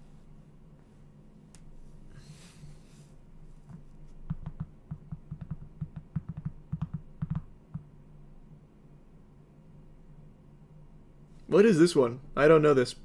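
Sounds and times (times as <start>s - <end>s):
faint low hum: 0.0s - 13.0s
keyboard typing: 3.7s - 7.8s.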